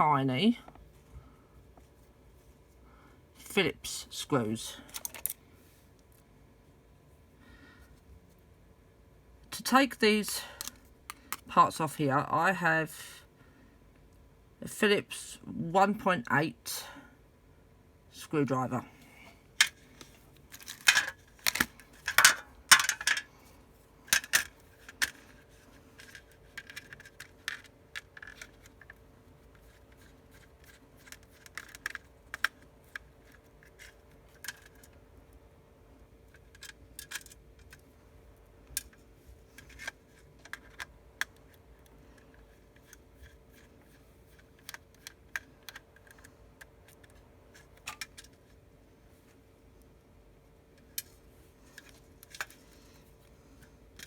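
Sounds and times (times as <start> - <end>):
faint steady hum: 0.0 - 54.0
tools handled on hard surface: 20.5 - 23.3.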